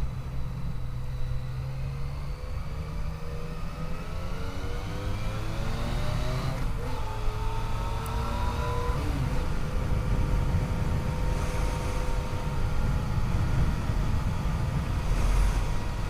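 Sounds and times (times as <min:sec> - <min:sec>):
motorcycle engine revving: 0:01.6 - 0:16.0
wind rumble on microphone: 0:08.2 - 0:16.0.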